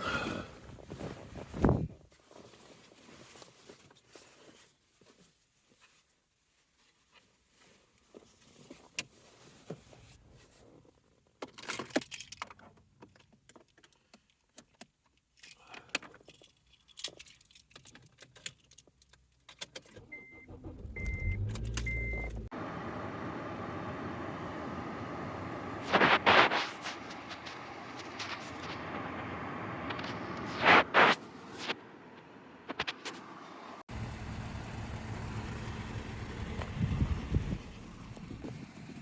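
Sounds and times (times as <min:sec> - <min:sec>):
keys jangling: 0:15.4 - 0:20.0
short electronic beeps: 0:20.1 - 0:22.5
low rumble: 0:33.9 - 0:39.0.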